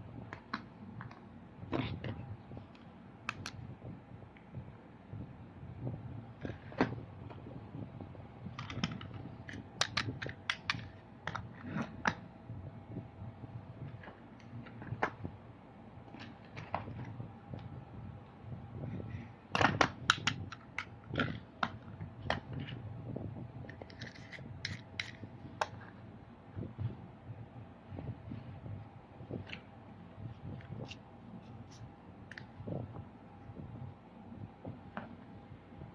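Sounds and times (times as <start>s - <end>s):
low hum: 0.0s - 35.9s
plastic toy clicks and taps: 8.6s - 11.4s, 19.6s - 20.9s.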